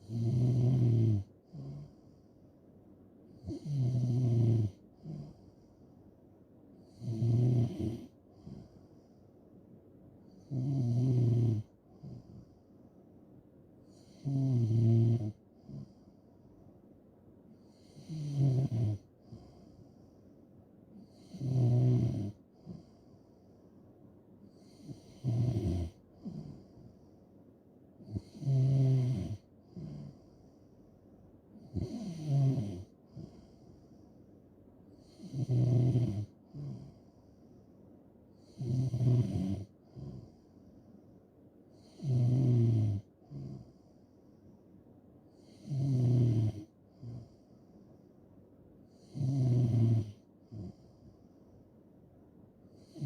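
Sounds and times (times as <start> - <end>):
person snoring: 0.0 - 2.0, 13.9 - 15.9, 17.7 - 19.0, 21.1 - 22.8, 24.6 - 26.8, 28.1 - 30.3, 31.7 - 33.6, 35.0 - 37.0, 38.4 - 40.3, 41.8 - 43.8, 45.5 - 47.3, 49.0 - 50.8.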